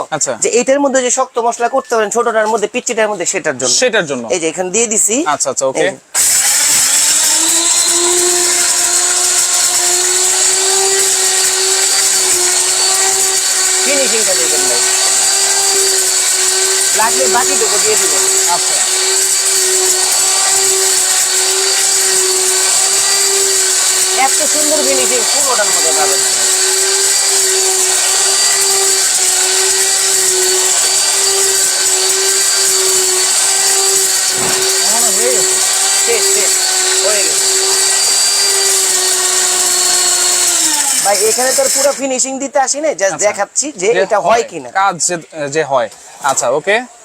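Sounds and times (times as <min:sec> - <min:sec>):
electric spice grinder whining: 0:06.1 - 0:44.9.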